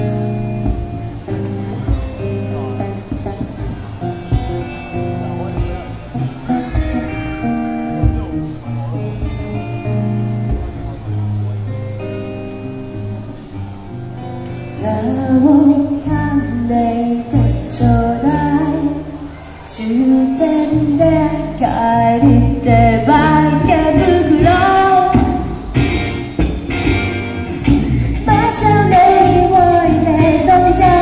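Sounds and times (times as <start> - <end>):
guitar accompaniment: 0.0 - 31.0
woman singing: 14.8 - 25.6, 28.2 - 31.0.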